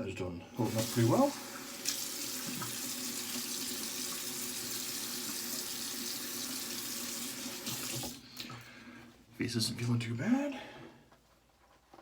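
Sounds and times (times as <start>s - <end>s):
tap running into sink: 1.8s - 3.5s.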